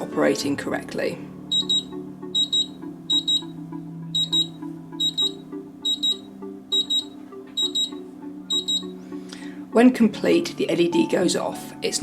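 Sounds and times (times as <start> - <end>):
background music: 0.0 - 12.0
keypad double beeps: 1.5 - 3.5, 4.2 - 8.9.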